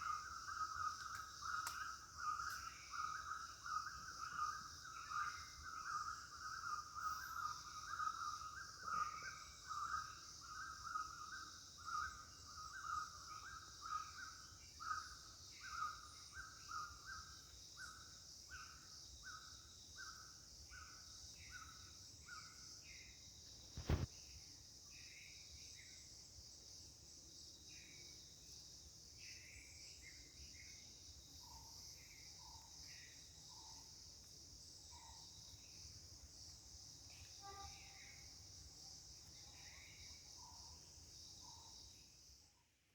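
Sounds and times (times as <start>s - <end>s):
high insect drone: 0.0s - 42.5s
sharp click: 23.8s - 24.1s.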